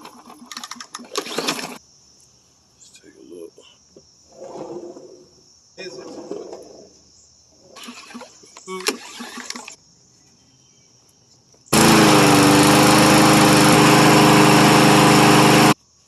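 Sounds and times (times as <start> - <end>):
lawn mower engine running: 0.0 - 1.8, 11.7 - 15.8.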